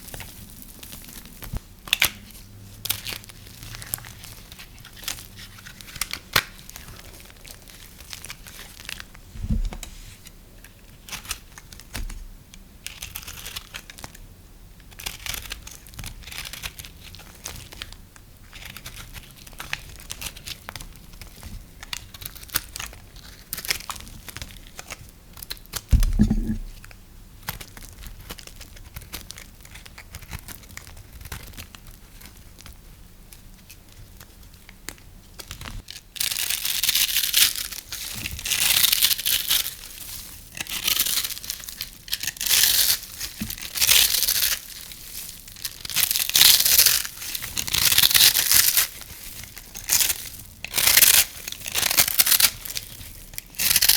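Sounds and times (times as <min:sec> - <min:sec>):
soap crackling and crinkling: 0:00.0 - 0:09.2, 0:12.8 - 0:14.2, 0:14.8 - 0:53.9
dull thump: 0:09.3 - 0:09.9, 0:25.9 - 0:26.8.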